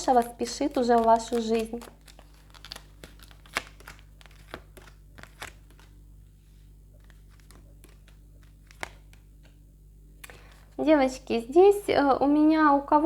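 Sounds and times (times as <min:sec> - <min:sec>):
cards tapping and rustling: 0:00.0 - 0:09.6, 0:10.2 - 0:10.8
faint card clicks: 0:07.0 - 0:09.6.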